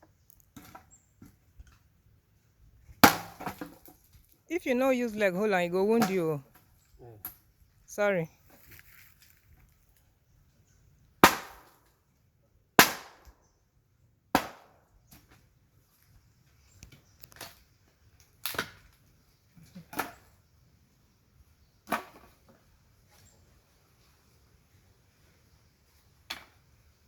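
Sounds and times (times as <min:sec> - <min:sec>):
wood chopping strikes: 0:03.0 - 0:03.8, 0:11.2 - 0:11.8, 0:12.8 - 0:13.4, 0:14.3 - 0:14.8.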